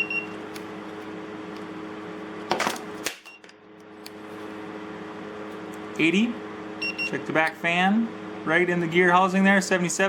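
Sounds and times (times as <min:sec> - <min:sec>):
thermometer beep: 0:00.0 - 0:00.4, 0:06.8 - 0:07.2.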